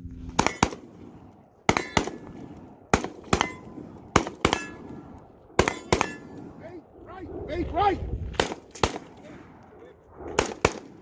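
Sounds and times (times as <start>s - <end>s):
rifle shots: 0.3s - 1.0s, 1.7s - 6.5s, 8.3s - 9.4s, 10.3s - 11.0s
metallic ring of steel targets: 3.2s - 4.9s, 5.6s - 6.4s.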